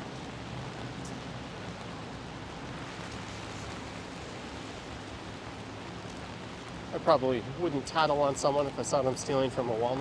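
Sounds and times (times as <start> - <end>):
pouring rain: 0.0 - 10.0.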